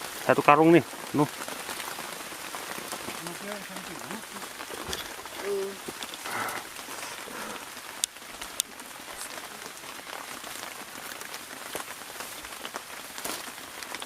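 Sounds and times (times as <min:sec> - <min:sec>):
heavy rain hissing: 0:00.0 - 0:14.0.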